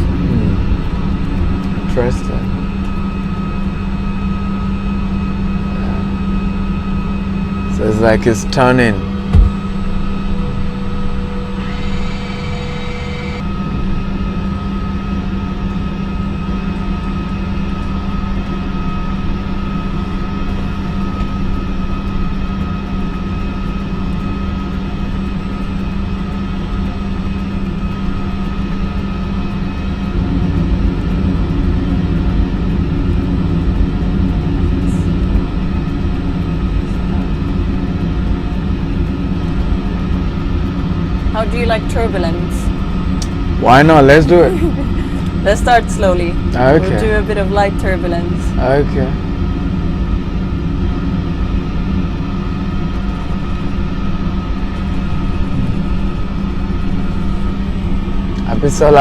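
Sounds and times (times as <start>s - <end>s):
jet engine rumble and whine: 0.0s - 59.0s
steady tones: 8.3s - 13.4s, 41.4s - 49.1s.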